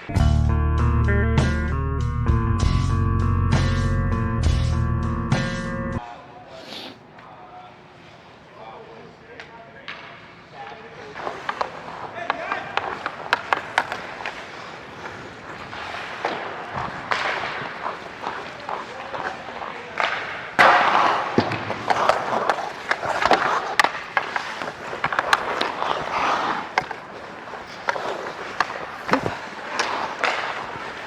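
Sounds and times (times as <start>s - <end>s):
skates scraping on ice: 6.5s - 31.0s
hockey sticks and puck clacking: 6.6s - 7.3s, 8.9s - 31.0s.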